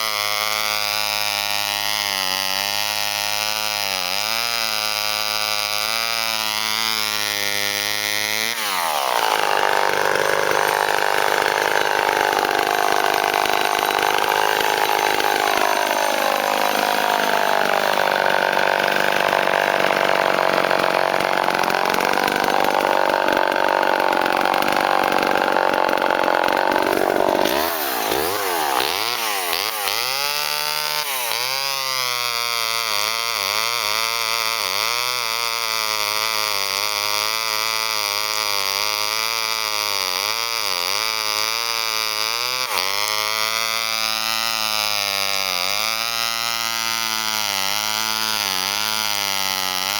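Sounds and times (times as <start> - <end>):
chainsaw cutting wood: 0.0 - 49.9
chainsaw revving: 0.0 - 49.9.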